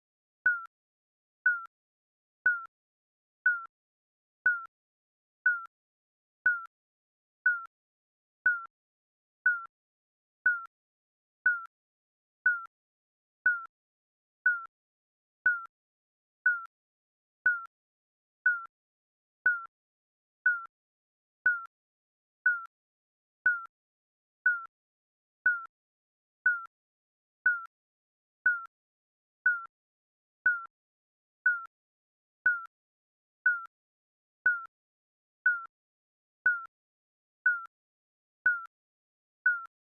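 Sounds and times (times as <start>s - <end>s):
digital timer beep: 0.5s - 0.7s, 1.5s - 1.7s, 2.5s - 2.7s, 3.5s - 3.7s, 4.5s - 4.7s, 5.5s - 5.7s, 6.5s - 6.7s, 7.5s - 7.7s, 8.5s - 8.7s, 9.5s - 9.7s, 10.5s - 10.7s, 11.5s - 11.7s, 12.5s - 12.7s, 13.5s - 13.7s, 14.5s - 14.7s, 15.5s - 15.7s, 16.5s - 16.7s, 17.5s - 17.7s, 18.5s - 18.7s, 19.5s - 19.7s, 20.5s - 20.7s, 21.5s - 21.7s, 22.5s - 22.7s, 23.5s - 23.7s, 24.5s - 24.7s, 25.5s - 25.7s, 26.5s - 26.7s, 27.5s - 27.7s, 28.5s - 28.7s, 29.5s - 29.7s, 30.5s - 30.7s, 31.5s - 31.7s, 32.5s - 32.7s, 33.5s - 33.7s, 34.5s - 34.7s, 35.5s - 35.7s, 36.5s - 36.7s, 37.5s - 37.7s, 38.5s - 38.7s, 39.5s - 39.7s.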